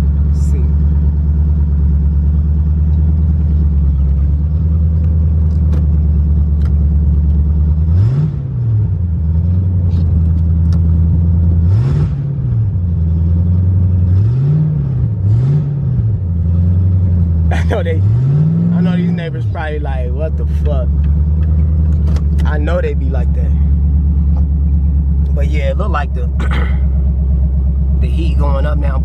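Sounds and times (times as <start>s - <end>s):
car engine idling: 0.0s - 14.3s, 15.1s - 29.0s
engine revving: 7.6s - 29.0s.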